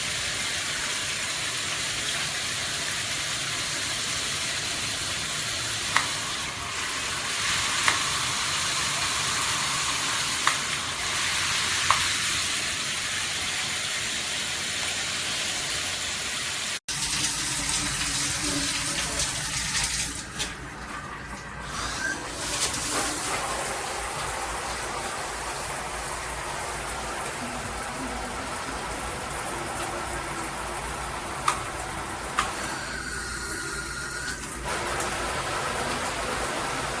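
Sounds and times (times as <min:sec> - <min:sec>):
shower spraying water: 0:00.0 - 0:37.0.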